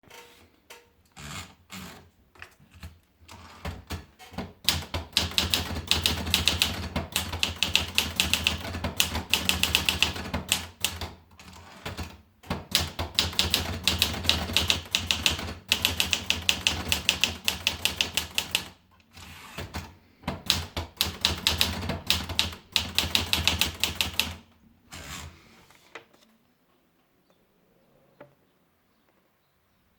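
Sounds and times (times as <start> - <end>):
typewriter key strikes: 4.7 - 11.2, 11.9 - 18.7, 19.6 - 24.4.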